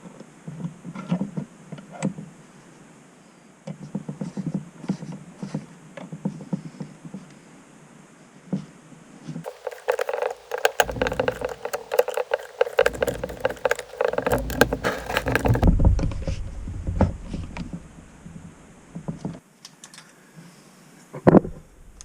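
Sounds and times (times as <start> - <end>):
small metal parts clicking and rattling: 9.5 - 15.7.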